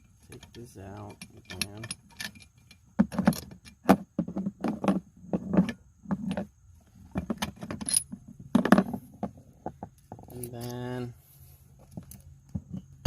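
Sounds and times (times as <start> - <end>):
metal parts clinking: 0.2 - 3.8, 7.2 - 9.0.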